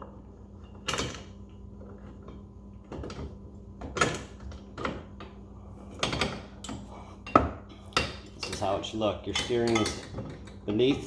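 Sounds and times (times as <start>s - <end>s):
faint steady hum: 0.0s - 11.0s
hard parts knocking and clicking: 2.3s - 11.0s.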